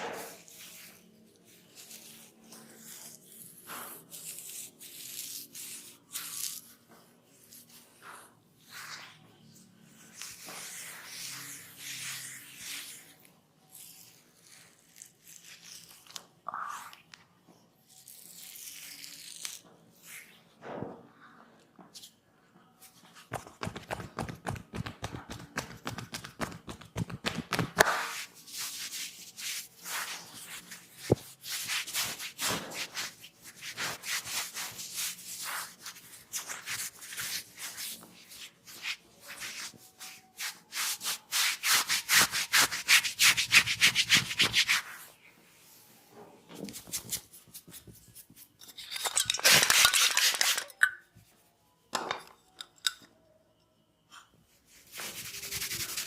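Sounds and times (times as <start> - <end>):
hands rubbing hair: 23.4 - 45.1.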